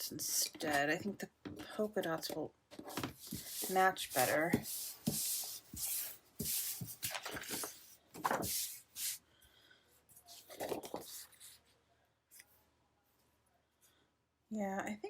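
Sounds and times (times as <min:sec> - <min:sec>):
paper rustling and sliding: 0:02.8 - 0:09.2, 0:10.2 - 0:11.6.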